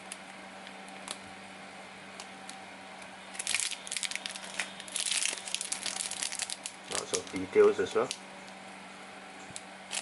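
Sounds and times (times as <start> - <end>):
faint steady hum: 0.0 - 10.0
plastic bag crinkling: 3.3 - 8.2.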